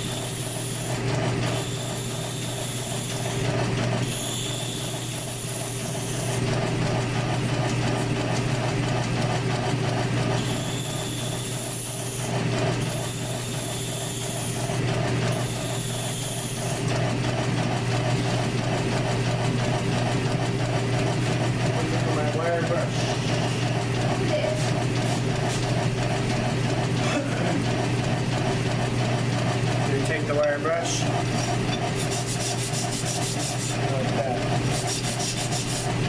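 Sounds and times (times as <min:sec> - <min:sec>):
lathe humming: 0:00.0 - 0:36.0
hand file rasping on wheel: 0:04.0 - 0:06.4, 0:10.4 - 0:14.8, 0:30.9 - 0:36.0.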